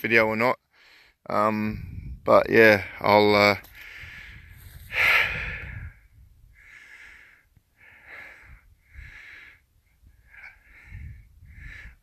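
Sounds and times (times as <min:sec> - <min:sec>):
person breathing: 0:00.7 - 0:01.2, 0:03.7 - 0:12.0.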